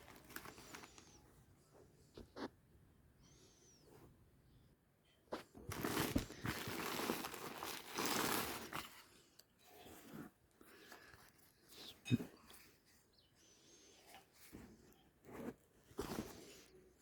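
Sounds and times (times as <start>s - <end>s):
packaging crinkling and rustling: 0.0s - 1.1s, 5.5s - 9.1s.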